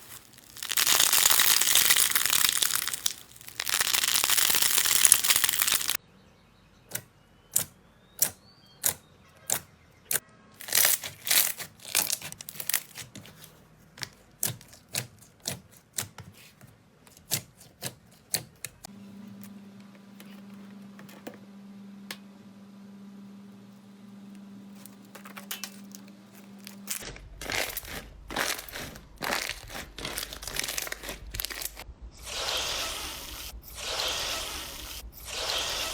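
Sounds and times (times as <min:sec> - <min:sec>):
slime crunching: 0:00.0 - 0:06.0, 0:10.6 - 0:13.1, 0:26.4 - 0:32.9
low hum: 0:20.7 - 0:35.9.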